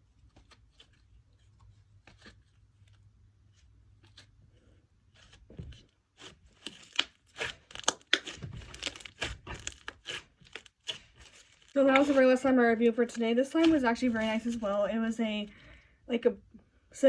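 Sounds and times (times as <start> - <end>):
slime crackling and popping: 6.2 - 14.5.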